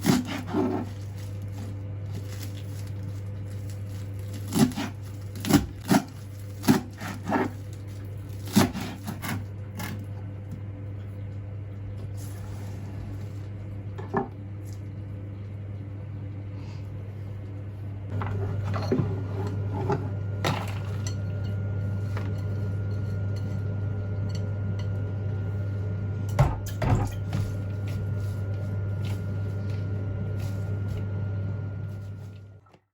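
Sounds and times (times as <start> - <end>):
low hum: 9.7 - 32.7.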